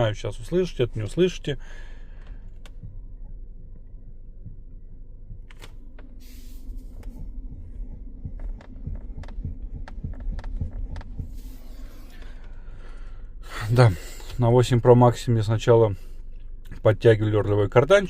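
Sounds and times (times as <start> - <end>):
steering knocking: 0.0 - 14.4
low steady hum: 0.0 - 18.0.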